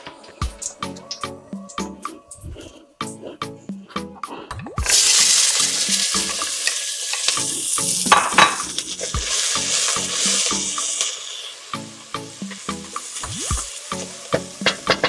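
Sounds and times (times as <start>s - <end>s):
food sizzling in hot oil: 4.8s - 15.0s
utensil stirring clicks: 4.8s - 15.0s.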